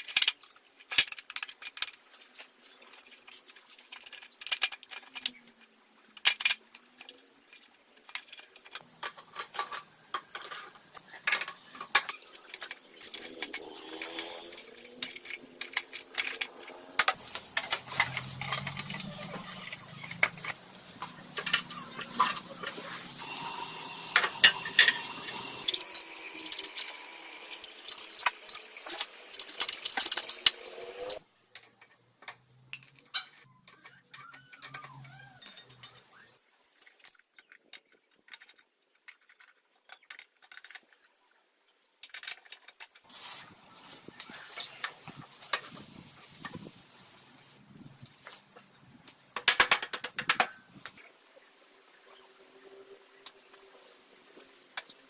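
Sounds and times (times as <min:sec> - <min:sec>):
metal tools clinking and rattling: 0:03.0 - 0:23.0, 0:24.1 - 0:26.9, 0:27.5 - 0:32.0, 0:33.0 - 0:40.9.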